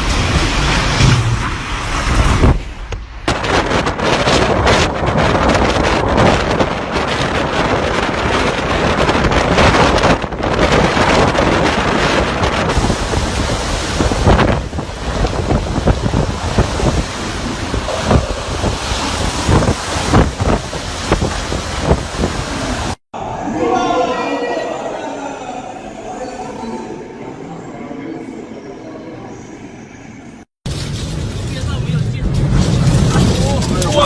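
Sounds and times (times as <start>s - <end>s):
storm wind buffeting microphone: 0.0s - 23.0s.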